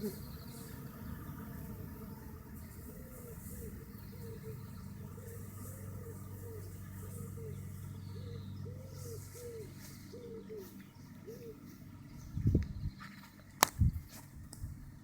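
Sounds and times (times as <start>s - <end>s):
bird cooing: 0.0s - 0.7s, 2.6s - 12.1s
steady low hum: 0.0s - 15.0s.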